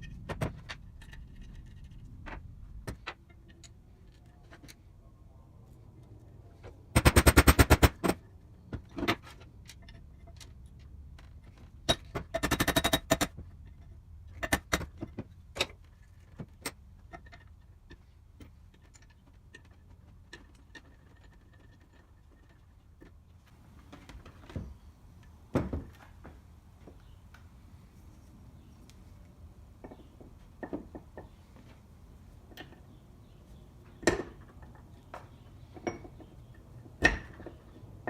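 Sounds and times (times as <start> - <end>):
tools clicking and knocking: 6.9 - 23.2.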